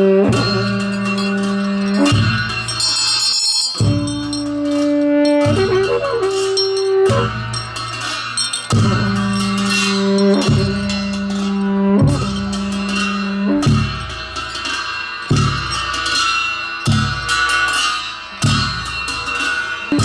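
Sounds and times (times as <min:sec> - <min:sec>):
low drum beats: 0:00.0 - 0:16.2
held drone tones: 0:08.7 - 0:14.2.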